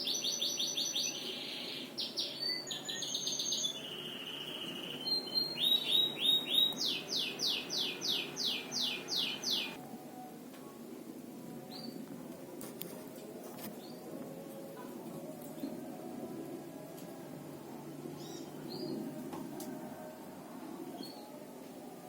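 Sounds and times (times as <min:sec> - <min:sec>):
bird chirping: 0:00.0 - 0:09.8
descending whistled bird notes: 0:00.0 - 0:09.8.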